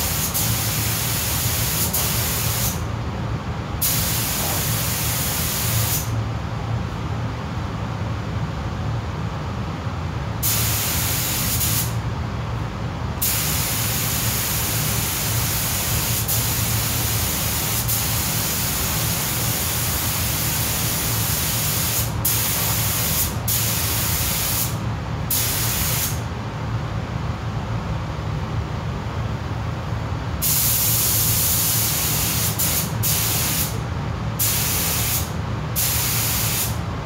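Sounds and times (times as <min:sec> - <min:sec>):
spray gun hissing: 0:00.0 - 0:02.8, 0:03.8 - 0:06.1, 0:10.4 - 0:12.0, 0:13.2 - 0:26.2, 0:30.4 - 0:33.8, 0:34.4 - 0:36.8
steady low hum: 0:00.0 - 0:37.0.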